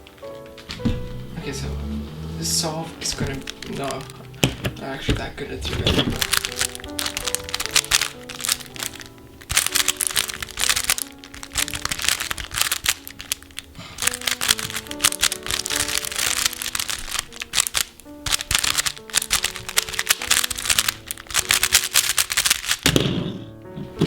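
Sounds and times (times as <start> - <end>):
background music: 0.0 - 24.0
speed cube clicking: 3.1 - 4.6, 6.1 - 23.0.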